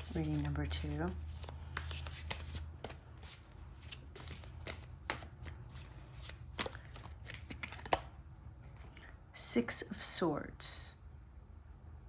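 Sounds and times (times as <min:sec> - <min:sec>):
cards being shuffled: 0:00.0 - 0:09.0.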